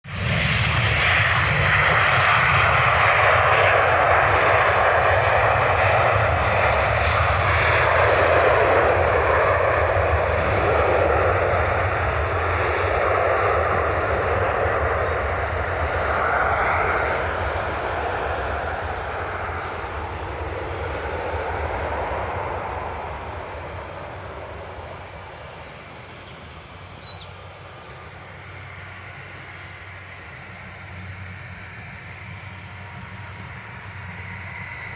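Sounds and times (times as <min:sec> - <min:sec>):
jet engines roaring: 0:00.0 - 0:34.9.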